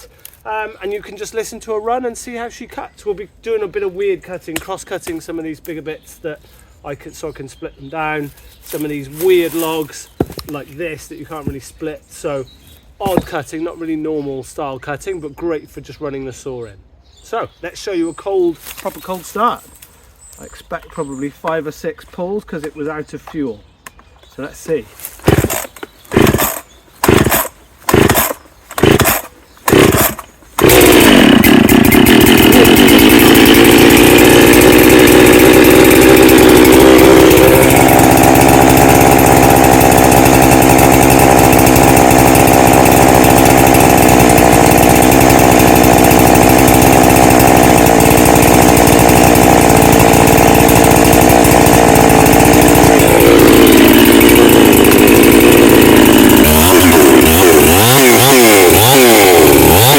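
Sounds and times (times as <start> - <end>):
chainsaw engine running: 8.6 - 11.6, 13.0 - 13.5, 25.2 - 59.9
starter cord pulls: 25.1 - 59.9.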